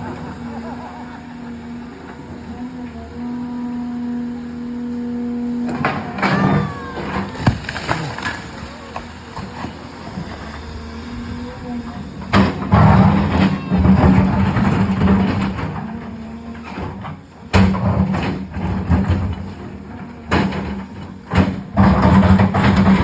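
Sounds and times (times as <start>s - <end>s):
excavator engine running: 0.0s - 23.0s
metal clanks and squeals: 12.3s - 17.2s.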